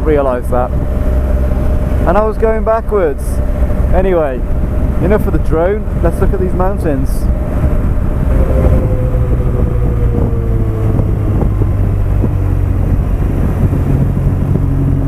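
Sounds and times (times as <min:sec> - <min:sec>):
motorcycle engine running: 0:00.0 - 0:15.0
wind buffeting microphone: 0:00.0 - 0:15.0.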